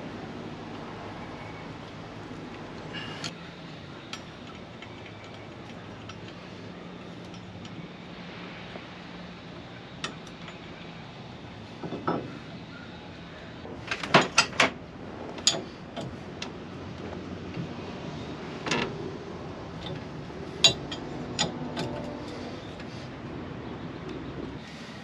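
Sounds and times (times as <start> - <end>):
steady low hum: 14.8 - 25.0
metal tools clinking: 19.8 - 22.9.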